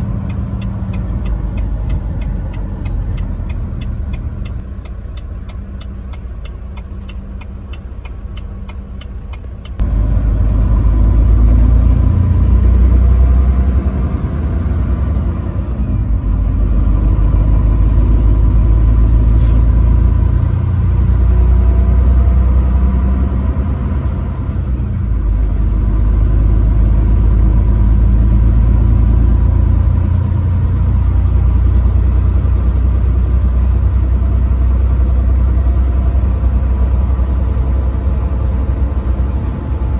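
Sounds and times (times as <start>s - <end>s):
regular ticking: 0.0s - 9.8s
truck engine and road rumble: 0.0s - 39.9s.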